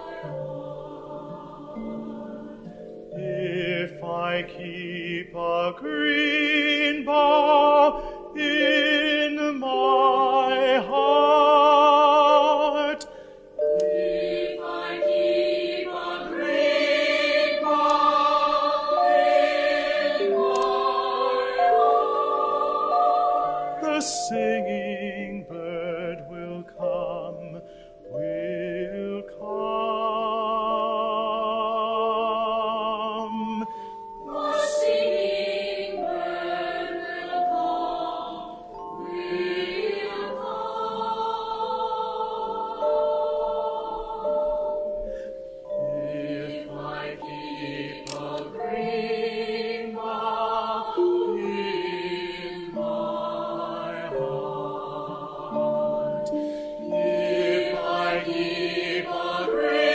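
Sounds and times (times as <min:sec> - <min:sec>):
group of voices singing: 0:00.0 - 0:02.7, 0:13.7 - 0:27.5, 0:28.3 - 0:44.9, 0:46.0 - 0:59.9.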